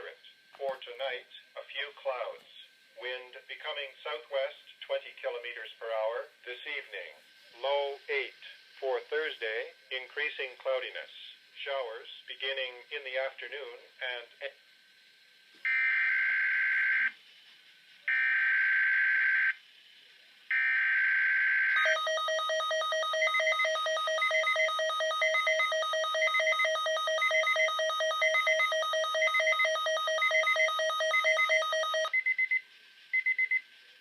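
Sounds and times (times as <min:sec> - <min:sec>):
digital data bursts: 0:21.7 - 0:33.8.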